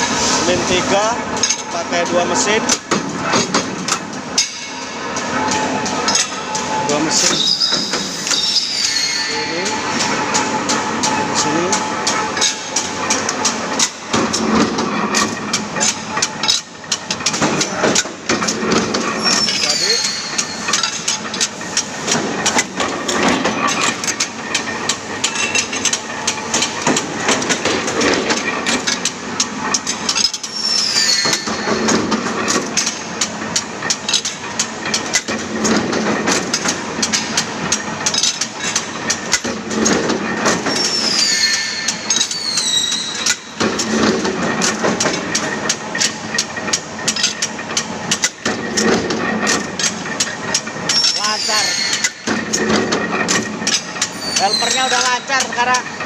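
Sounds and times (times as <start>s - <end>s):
high falling squeal: 7.3s - 9.8s.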